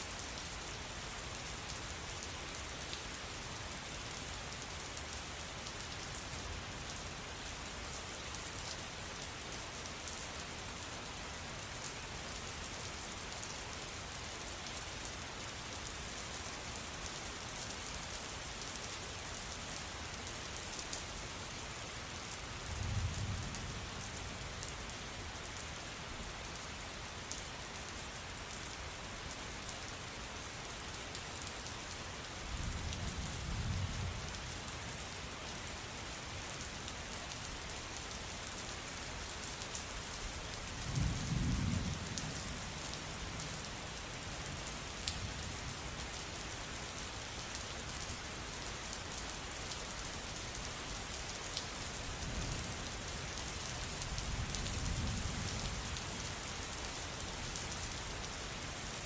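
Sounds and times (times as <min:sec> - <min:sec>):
steady rain falling: 0:00.0 - 0:59.0
low rumbles of thunder: 0:40.9 - 0:42.7.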